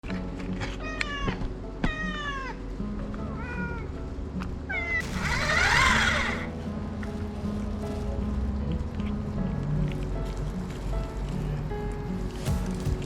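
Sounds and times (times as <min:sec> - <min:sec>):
cat meowing: 0:00.8 - 0:02.6, 0:03.4 - 0:03.9, 0:04.7 - 0:06.5.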